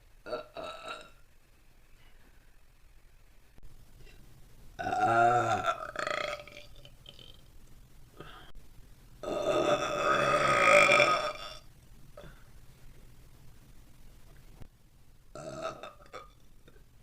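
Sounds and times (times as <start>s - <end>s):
woman burping loudly: 0.2s - 1.2s, 4.8s - 7.4s, 9.2s - 11.6s, 15.4s - 16.8s.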